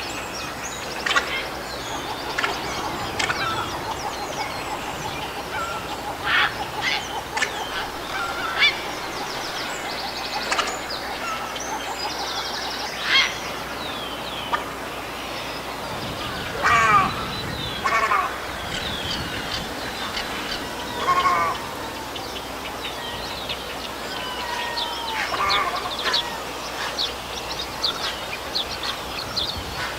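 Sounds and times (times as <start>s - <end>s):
birds singing high trills: 0.0s - 29.9s
heron harsh calls: 20.0s - 21.6s.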